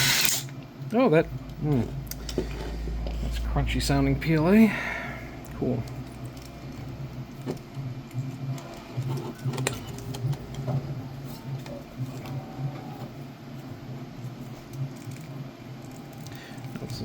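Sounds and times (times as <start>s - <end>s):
screws crunching into plastic: 0.0s - 0.5s.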